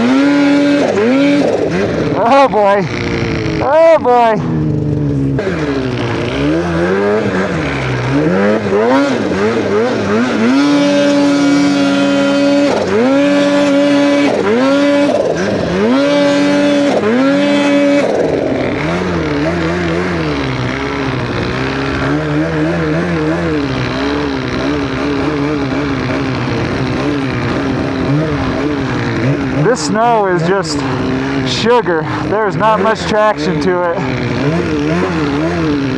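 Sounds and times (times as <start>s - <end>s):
snowmobile engine revving: 0.0s - 35.9s.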